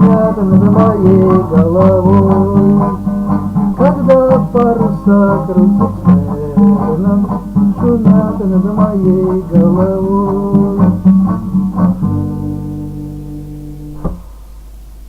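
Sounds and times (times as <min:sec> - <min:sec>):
man singing: 0:00.0 - 0:12.0
acoustic guitar strumming: 0:00.0 - 0:15.0.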